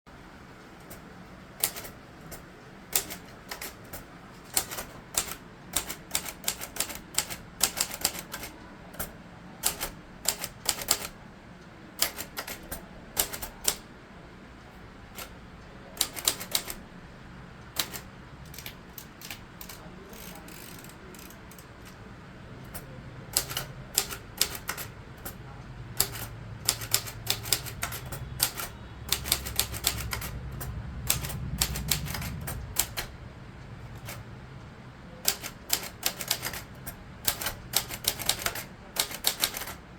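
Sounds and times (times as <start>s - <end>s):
typewriter key strikes: 1.6s - 11.2s, 12.0s - 13.8s, 16.0s - 16.8s, 17.7s - 22.0s, 22.6s - 25.4s, 26.0s - 33.2s, 35.2s - 39.8s
low hum: 30.2s - 35.0s.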